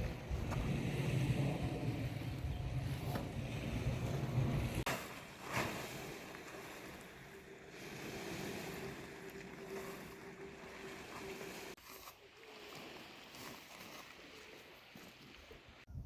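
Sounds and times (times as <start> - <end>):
wind rumbling on microphone: 0.0 - 11.8, 15.6 - 16.0
seaside ambience: 0.0 - 15.9.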